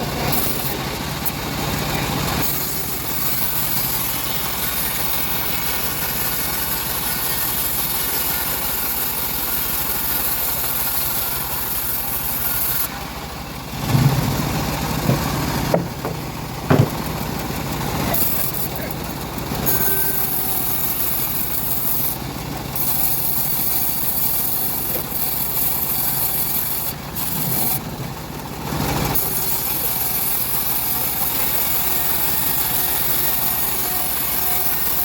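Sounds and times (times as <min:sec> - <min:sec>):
saw blade hissing through log: 0:00.0 - 0:13.0, 0:18.0 - 0:27.8, 0:28.8 - 0:35.0
engine hum: 0:00.0 - 0:35.0
short knocks: 0:13.8 - 0:17.2.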